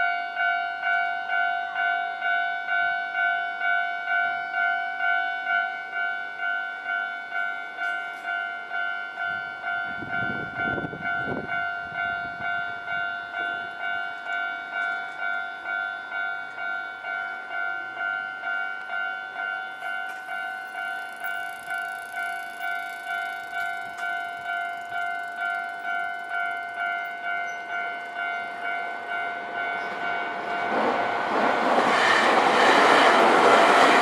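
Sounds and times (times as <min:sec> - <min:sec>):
level crossing warning bell: 0:00.0 - 0:34.0
train rumbling past: 0:19.9 - 0:34.0.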